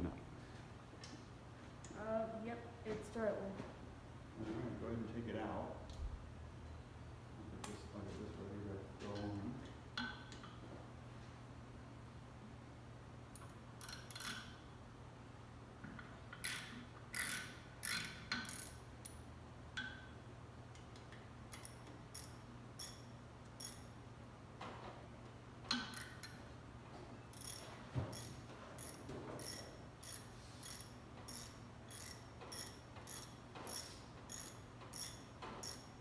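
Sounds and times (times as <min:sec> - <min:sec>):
metallic clicks of hand tools: 0:13.4 - 0:14.6, 0:16.3 - 0:19.2, 0:21.0 - 0:23.0, 0:23.6 - 0:23.8, 0:25.7 - 0:26.4, 0:27.3 - 0:35.9
ratchet wrench clicking: 0:13.4 - 0:14.6, 0:16.4 - 0:19.2, 0:21.5 - 0:23.0, 0:23.6 - 0:23.9, 0:25.7 - 0:26.4, 0:27.3 - 0:35.9.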